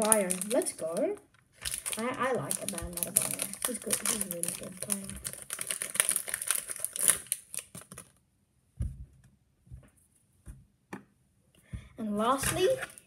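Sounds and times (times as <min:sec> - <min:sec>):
plastic wrapper crinkling: 0:00.0 - 0:08.2
soft knocks: 0:08.8 - 0:11.1.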